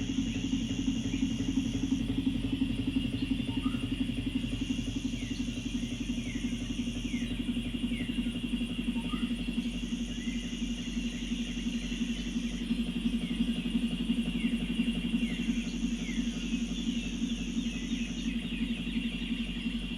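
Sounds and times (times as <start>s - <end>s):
engine running with fast pulse: 0.0s - 19.9s.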